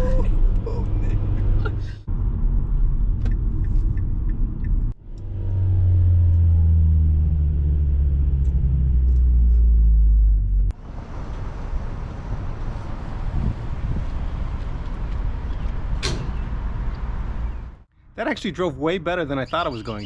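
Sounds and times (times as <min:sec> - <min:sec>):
car engine drone: 0:00.0 - 0:17.8
road rumble: 0:00.0 - 0:20.0.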